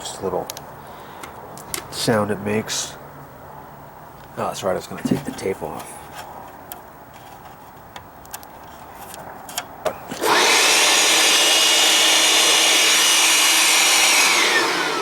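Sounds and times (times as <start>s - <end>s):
handling clicks and rustles: 4.2s - 10.2s
electric air blower rushing: 10.1s - 15.0s.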